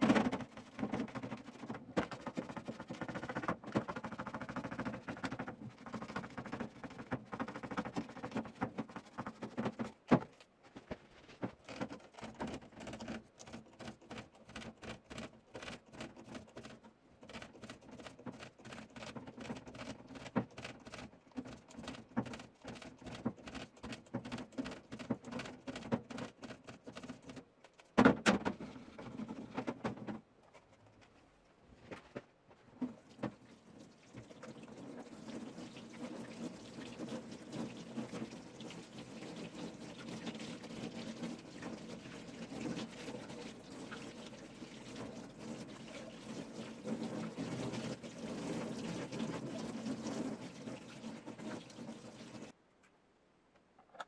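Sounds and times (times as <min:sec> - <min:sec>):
clicks and knocks of handling: 0:00.0 - 0:31.2, 0:53.6 - 0:54.0
water running from a tap: 0:33.4 - 0:52.5.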